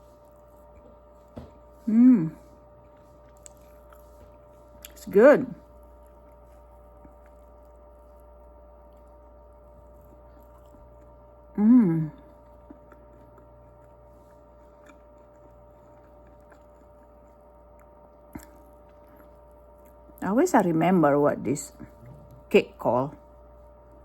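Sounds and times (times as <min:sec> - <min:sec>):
quiet chewing: 0:00.0 - 0:20.3, 0:21.7 - 0:22.5
faint electrical hum: 0:00.0 - 0:24.0
person humming mm: 0:01.8 - 0:02.6, 0:11.5 - 0:12.3.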